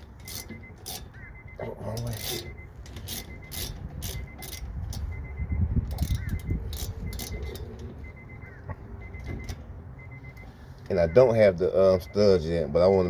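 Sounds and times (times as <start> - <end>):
wrench clicking on metal bolt: 0.0 - 1.3, 2.0 - 5.2, 5.9 - 7.8.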